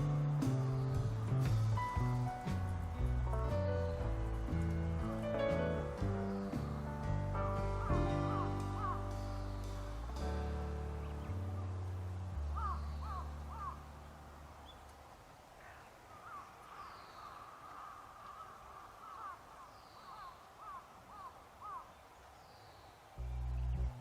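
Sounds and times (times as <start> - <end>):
bird calling: 6.0 - 10.2, 11.0 - 24.0.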